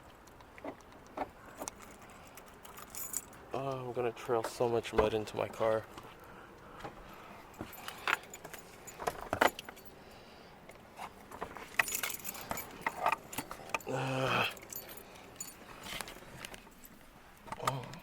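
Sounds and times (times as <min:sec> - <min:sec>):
keys jangling: 0:01.5 - 0:03.5, 0:07.6 - 0:10.0, 0:11.5 - 0:16.9.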